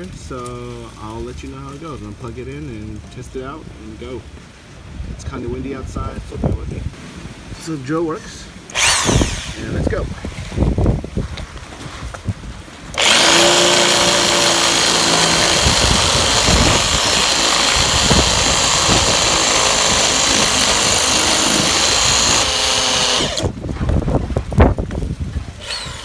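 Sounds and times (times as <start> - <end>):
wind rumbling on microphone: 0.0 - 26.0
hammer drill drilling into cement: 8.7 - 9.9, 13.0 - 23.5, 25.6 - 26.0.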